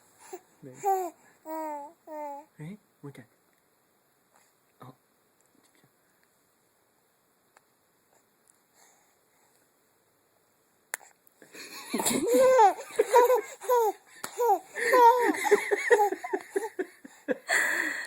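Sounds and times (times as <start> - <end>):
baby laughing: 11.7 - 17.2.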